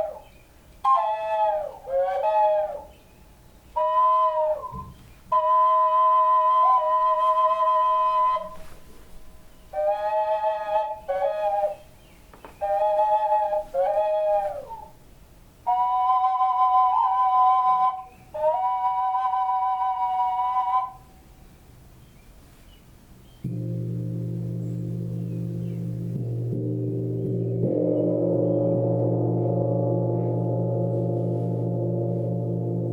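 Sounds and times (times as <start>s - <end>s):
flute-like wind instrument: 0.0s - 12.0s, 12.6s - 15.0s, 15.6s - 21.3s.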